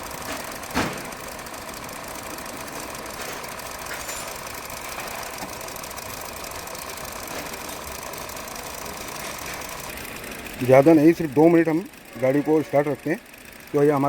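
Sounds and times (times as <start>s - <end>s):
car engine idling: 0.0s - 14.0s.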